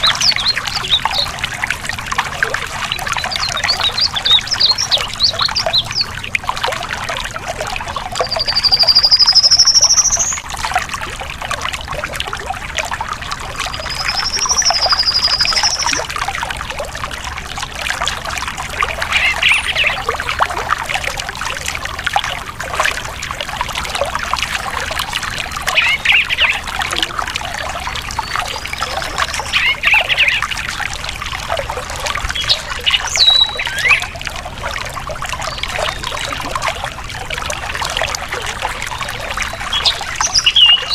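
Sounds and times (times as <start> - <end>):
songbird whistling: 0.0 - 1.3, 2.9 - 6.1, 8.2 - 10.4, 13.6 - 16.1, 25.7 - 26.7, 28.2 - 30.5, 32.4 - 34.1, 39.7 - 40.9
stream trickling over rocks: 0.0 - 40.9.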